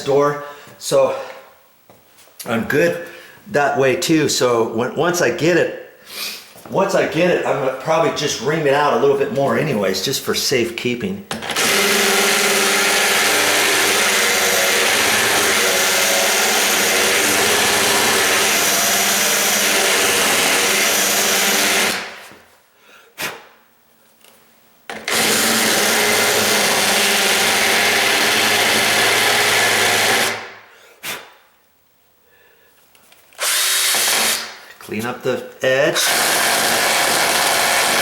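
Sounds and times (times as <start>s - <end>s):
electric drill running: 11.4s - 22.2s, 24.9s - 30.5s, 33.4s - 34.5s, 36.0s - 38.0s.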